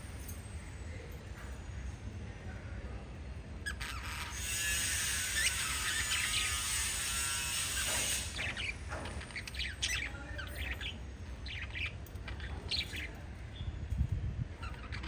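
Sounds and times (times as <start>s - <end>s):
parrots chirping: 3.6s - 13.3s, 14.6s - 15.0s.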